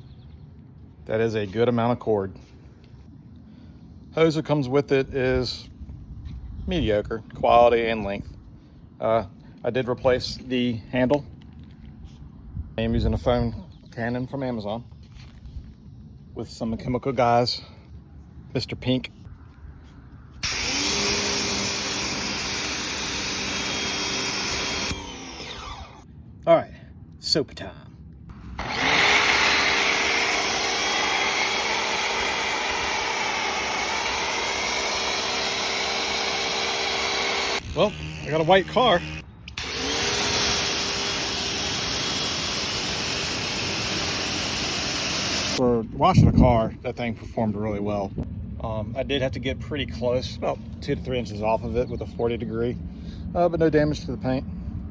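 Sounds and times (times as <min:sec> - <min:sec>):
pressure washer motor and pump: 0:20.4 - 0:26.0, 0:28.6 - 0:45.6
loud spray hiss: 0:39.6 - 0:45.6.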